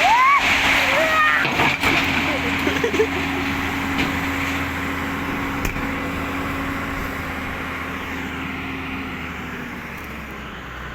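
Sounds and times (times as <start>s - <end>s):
excavator engine running: 0.0s - 10.9s.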